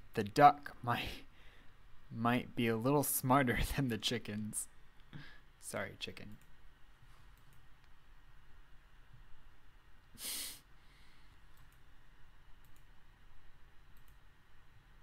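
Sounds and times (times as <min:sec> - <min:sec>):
faint clicks: 0:07.3 - 0:08.0, 0:11.5 - 0:11.9, 0:12.6 - 0:12.9, 0:13.9 - 0:14.2.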